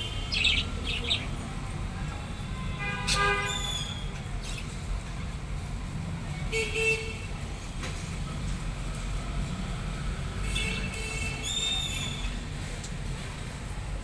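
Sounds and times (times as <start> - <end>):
lovebird chirp: 0.0 - 1.4.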